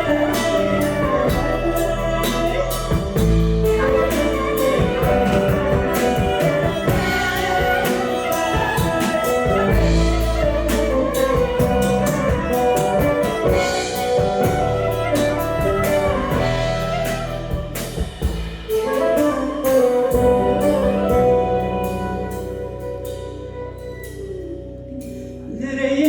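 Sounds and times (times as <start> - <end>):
violin melody: 0.0 - 18.0
drum kit with cymbal hits: 0.0 - 25.3
guitars: 0.0 - 25.5
clarinet melody: 0.0 - 25.6.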